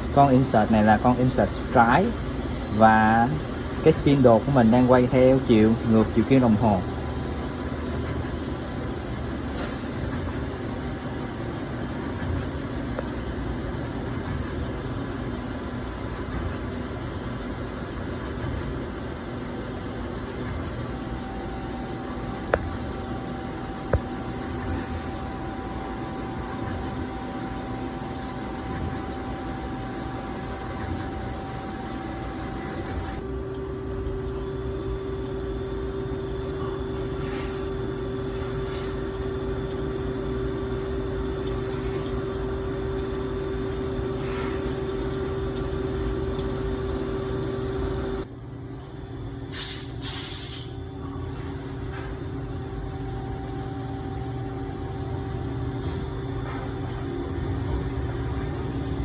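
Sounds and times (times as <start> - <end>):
lathe machine hum: 0.0 - 48.4
short loud hisses: 49.5 - 50.8.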